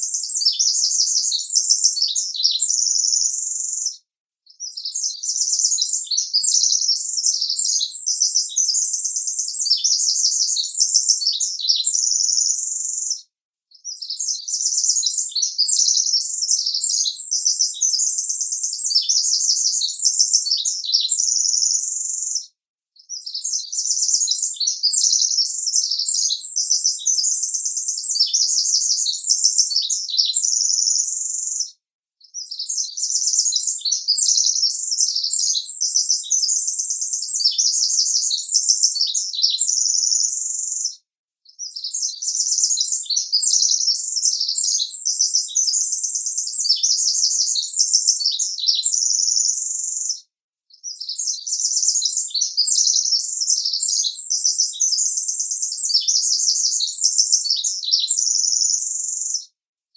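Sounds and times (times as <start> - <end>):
birds chirping: 0.0 - 3.9, 4.6 - 13.2, 13.8 - 22.4, 23.1 - 31.4, 32.4 - 40.8.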